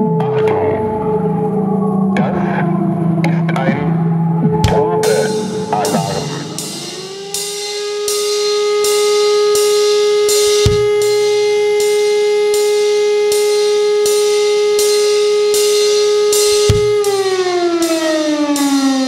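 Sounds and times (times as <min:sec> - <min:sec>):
siren holding steady pitch: 0:00.0 - 0:19.0
cymbal strikes: 0:04.6 - 0:19.0.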